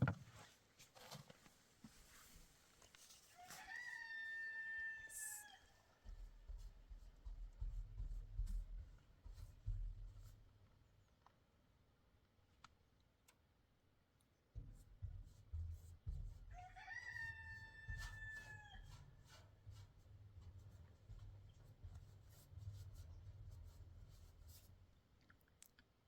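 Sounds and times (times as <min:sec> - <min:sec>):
rooster crowing: 0:03.4 - 0:05.8, 0:16.5 - 0:19.0.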